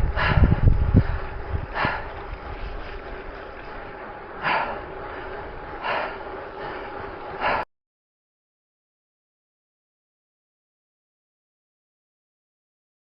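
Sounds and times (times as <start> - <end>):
wind rumbling on microphone: 0.0 - 7.6
cyclist breathing hard: 0.0 - 7.7.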